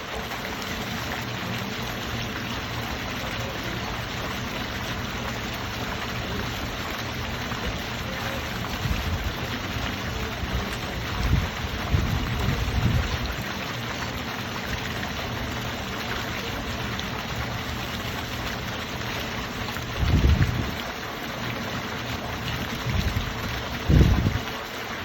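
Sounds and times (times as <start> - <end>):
fountain water splashing: 0.0 - 25.0
wind rumble on microphone: 10.2 - 13.3, 19.9 - 20.8, 22.5 - 24.6.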